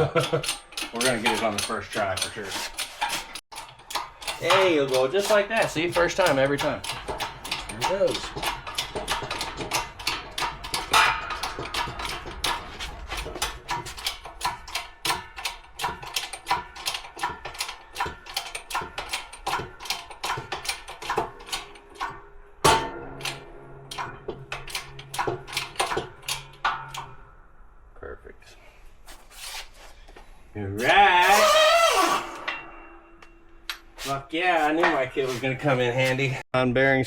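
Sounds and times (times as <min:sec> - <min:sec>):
ratchet wrench clicking: 0:00.1 - 0:22.1.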